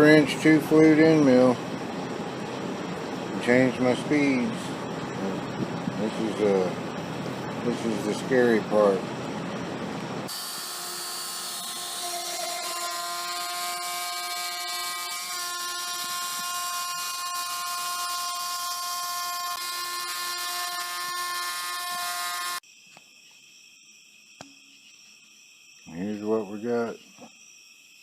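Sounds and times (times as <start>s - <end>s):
router spindle cutting wood: 10.3s - 22.6s.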